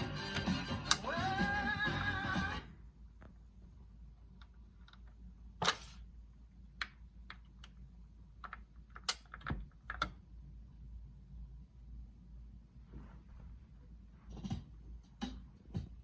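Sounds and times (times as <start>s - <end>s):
record changer clicks: 0.3s - 1.1s.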